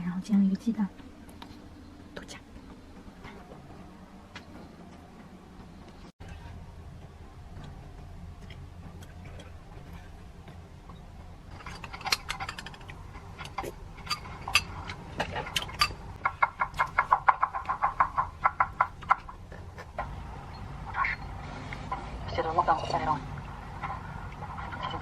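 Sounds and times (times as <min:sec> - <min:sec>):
low steady hum: 0:00.0 - 0:25.0
utensils clinking against a bowl: 0:11.5 - 0:16.2, 0:20.6 - 0:25.0.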